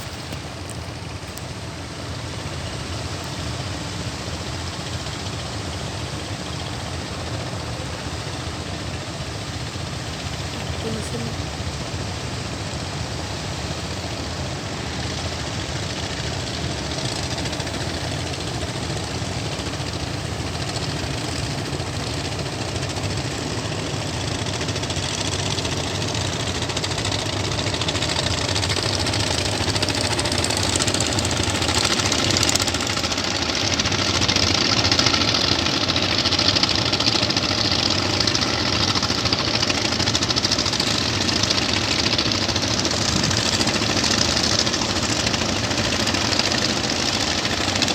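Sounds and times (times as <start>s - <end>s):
boat engine running: 0.0s - 47.9s.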